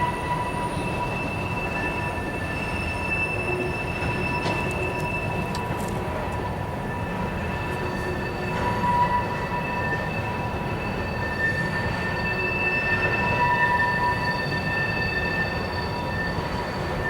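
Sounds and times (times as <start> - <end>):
train wheels rumbling: 0.0 - 17.0
wheels squealing: 0.0 - 17.0.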